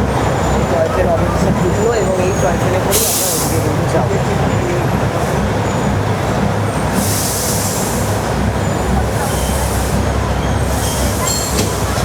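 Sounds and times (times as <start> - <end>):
diesel locomotive running: 0.0 - 12.0
air brakes hissing: 2.9 - 3.7, 6.8 - 12.0.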